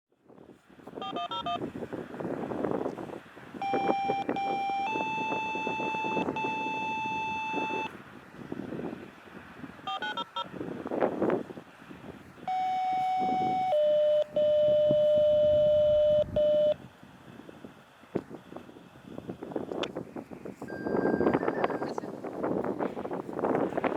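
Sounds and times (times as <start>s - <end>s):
electronic beep tones: 1.0s - 1.6s, 3.6s - 7.9s, 9.9s - 10.5s, 12.5s - 16.8s, 20.7s - 22.0s
short dial-tone-like beeps: 1.0s - 1.6s, 3.6s - 7.9s, 9.9s - 10.5s, 12.5s - 16.8s, 20.7s - 22.0s.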